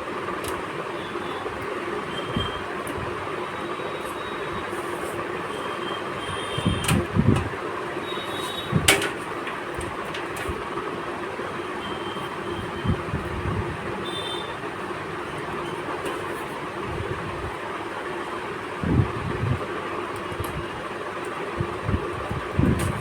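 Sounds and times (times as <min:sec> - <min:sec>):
steady background hum: 0:00.0 - 0:23.0
computer parts knocking: 0:08.8 - 0:10.6.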